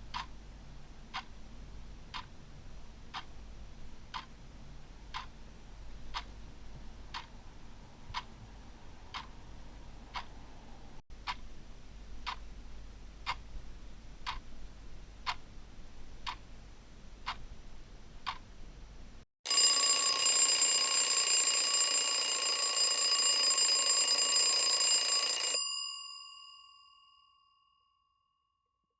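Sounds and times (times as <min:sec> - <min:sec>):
clock ticking: 0:00.1 - 0:08.4, 0:09.0 - 0:09.4, 0:10.1 - 0:10.4, 0:11.2 - 0:11.5, 0:12.2 - 0:12.5, 0:13.2 - 0:13.5, 0:14.2 - 0:14.5, 0:15.2 - 0:15.5, 0:16.2 - 0:16.4, 0:17.2 - 0:17.5, 0:18.2 - 0:18.5
alarm clock ringing: 0:19.5 - 0:26.8.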